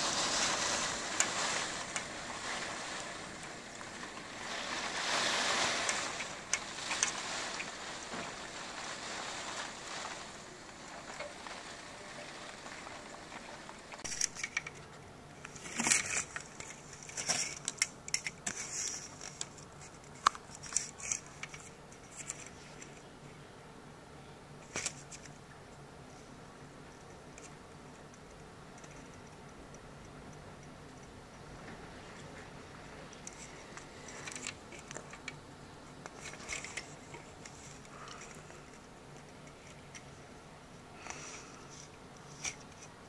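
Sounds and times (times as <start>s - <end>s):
sharp clicks and crackles: 0.0s - 23.1s, 26.9s - 40.2s.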